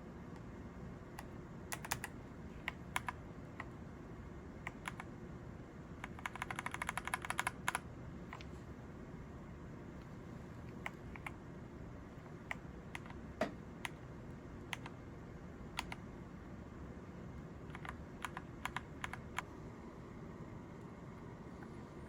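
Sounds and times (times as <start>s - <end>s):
mechanical keyboard keystrokes: 1.2s - 3.7s, 4.6s - 5.1s, 6.0s - 8.4s, 12.4s - 14.0s, 14.7s - 15.0s, 15.8s - 16.0s, 17.7s - 19.5s.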